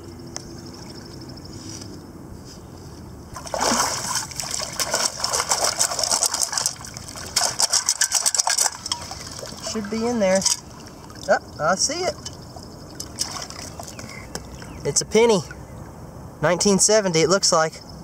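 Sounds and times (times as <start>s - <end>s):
water splashing and draining: 3.3s - 14.7s
sand and gravel rattling: 3.3s - 15.4s.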